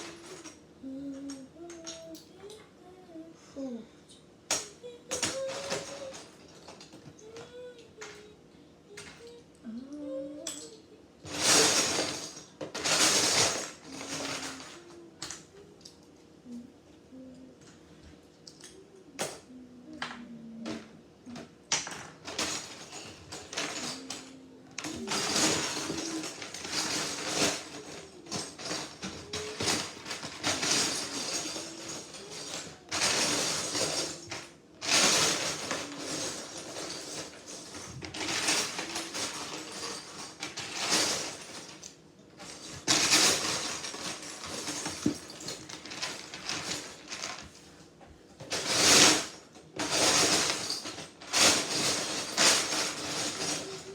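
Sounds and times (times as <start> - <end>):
plastic bricks rattling and clicking: 21.4 - 47.5, 48.4 - 53.9.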